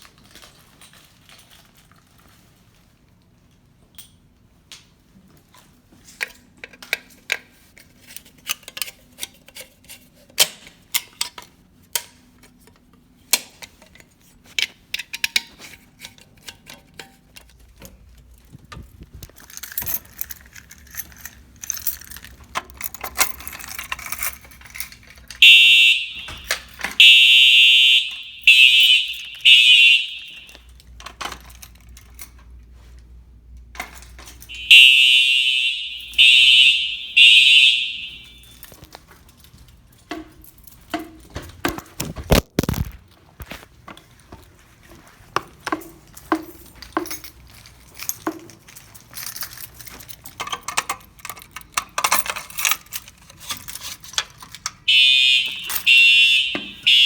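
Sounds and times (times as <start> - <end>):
light clicks and rattles: 11.0 - 25.5, 45.3 - 54.9
fire alarm horn blasts: 25.4 - 30.7, 34.4 - 38.8, 54.9 - 57.0.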